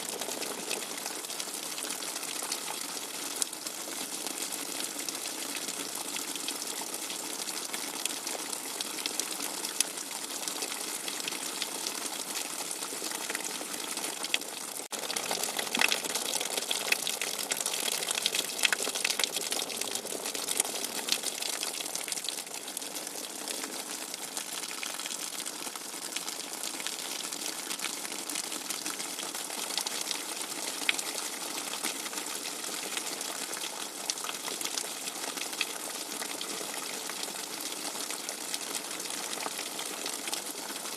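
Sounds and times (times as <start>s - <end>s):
fast-running water: 0.0s - 1.4s, 8.1s - 31.0s.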